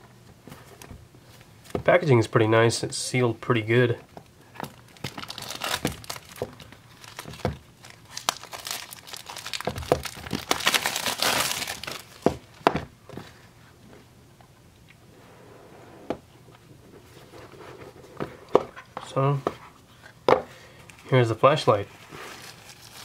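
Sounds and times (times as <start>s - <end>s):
packaging crinkling and tearing: 4.6s - 12.5s, 22.2s - 23.0s.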